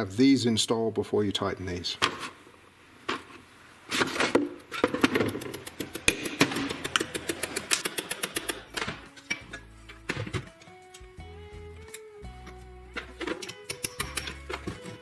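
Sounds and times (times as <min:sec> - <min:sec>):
hand tools clicking on metal: 0:04.7 - 0:11.1, 0:11.8 - 0:15.0
background music: 0:05.4 - 0:15.0.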